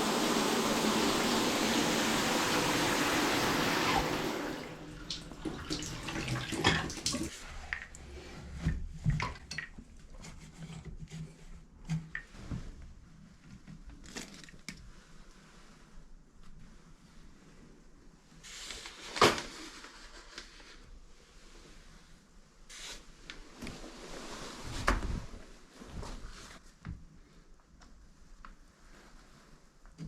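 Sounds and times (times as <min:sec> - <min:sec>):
shower water running: 0:00.0 - 0:07.3.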